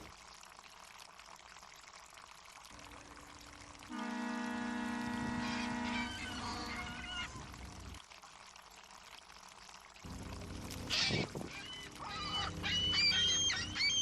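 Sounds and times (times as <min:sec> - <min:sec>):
seagulls calling: 0:05.3 - 0:07.4, 0:10.8 - 0:14.0.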